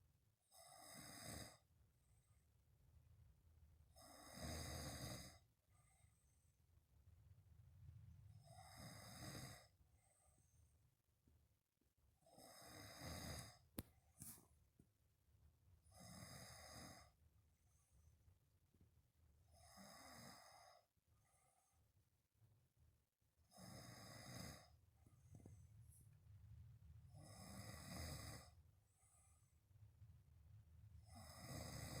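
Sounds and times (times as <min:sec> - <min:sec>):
person snoring: 0:04.0 - 0:05.4, 0:08.4 - 0:09.7, 0:12.2 - 0:13.6, 0:15.9 - 0:17.2, 0:19.6 - 0:20.8, 0:23.5 - 0:24.7, 0:27.1 - 0:28.6, 0:31.0 - 0:32.0
soft breathing: 0:05.3 - 0:06.7, 0:20.2 - 0:22.1, 0:23.7 - 0:26.4, 0:27.0 - 0:30.0.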